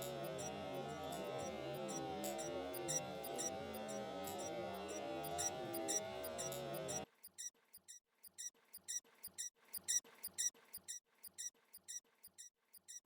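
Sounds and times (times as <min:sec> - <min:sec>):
suspense music: 0:00.0 - 0:07.0
sharp high ticks: 0:00.3 - 0:13.0.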